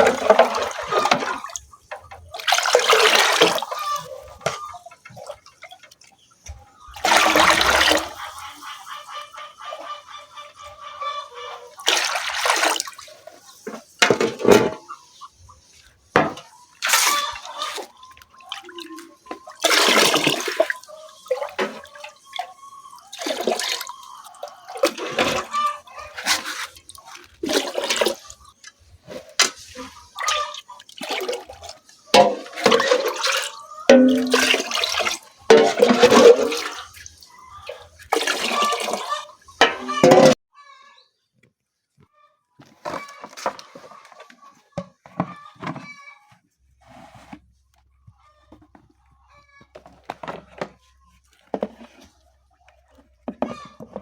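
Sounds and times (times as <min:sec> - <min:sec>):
water splashing and pouring: 0:00.0 - 0:06.1, 0:06.8 - 0:08.5, 0:11.7 - 0:14.8, 0:16.2 - 0:40.4.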